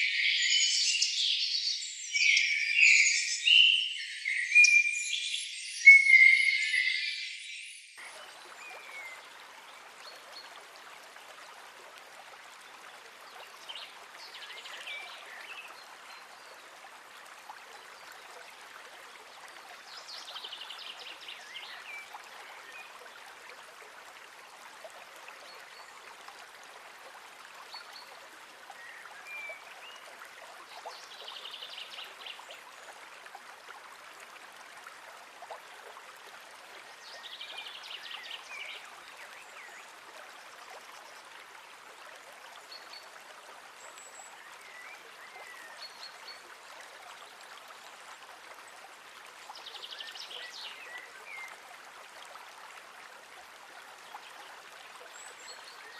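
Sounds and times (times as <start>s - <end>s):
birds whistling and trilling: 0.0s - 8.0s
running stream water: 0.0s - 55.9s.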